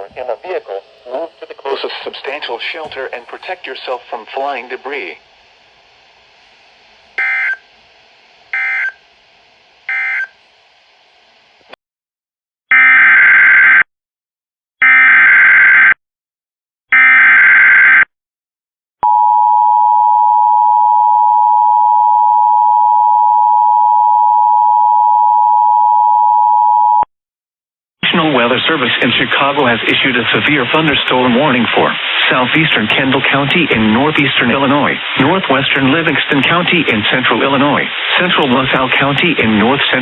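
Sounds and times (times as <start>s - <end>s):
two-tone attention signal: 7.2s - 7.6s, 8.6s - 9.0s, 9.9s - 10.3s
warbling data bursts: 7.2s - 7.7s.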